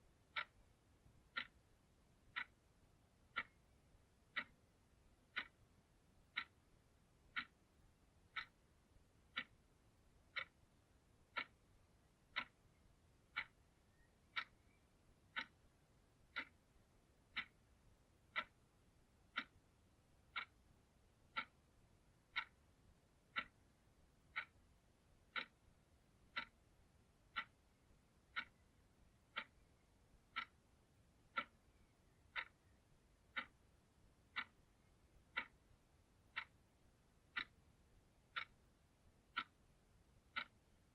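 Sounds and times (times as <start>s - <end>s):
clock ticking: 0.0s - 40.9s.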